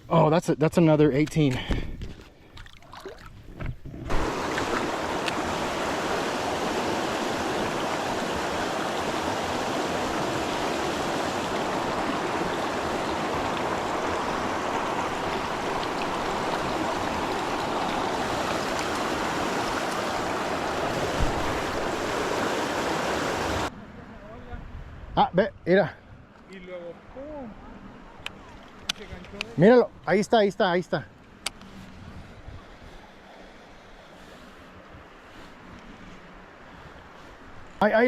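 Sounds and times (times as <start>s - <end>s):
river water rushing: 4.1s - 23.7s.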